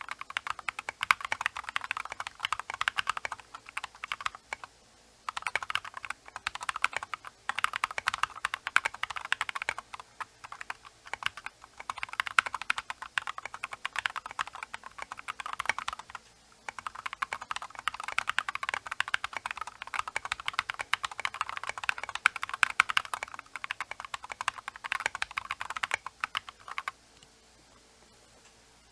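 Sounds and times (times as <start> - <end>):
mechanical keyboard typing: 0.0 - 4.7, 5.3 - 27.0
faint microphone hiss: 0.0 - 28.9.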